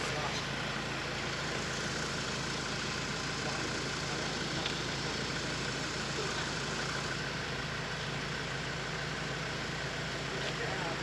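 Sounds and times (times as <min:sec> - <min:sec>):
engine idling: 0:00.0 - 0:11.0.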